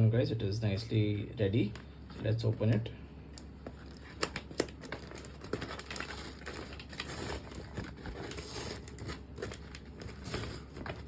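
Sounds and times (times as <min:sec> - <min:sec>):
paper bag crinkling and rustling: 0:03.7 - 0:11.0
sharp paper crackles: 0:03.7 - 0:11.0.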